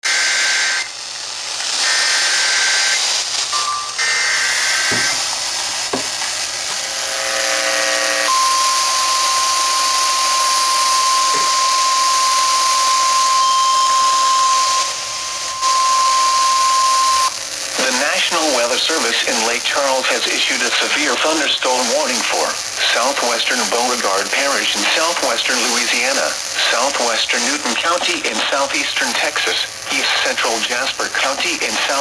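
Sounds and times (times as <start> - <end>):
radio hiss: 0.1 - 32.0
buzzing data bursts: 1.8 - 31.3
steady warning alarm tone: 2.0 - 23.5.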